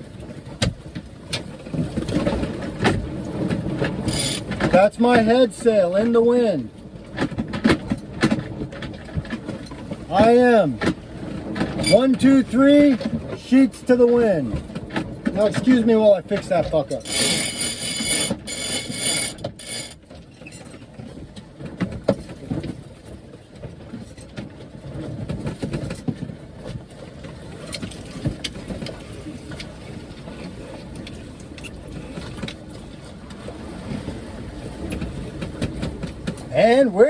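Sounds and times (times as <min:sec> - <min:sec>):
sail flapping: 0:00.0 - 0:37.0
wind: 0:00.0 - 0:37.0
water noise: 0:01.7 - 0:07.1, 0:09.4 - 0:20.0
rigging clicks and knocks: 0:07.1 - 0:12.2.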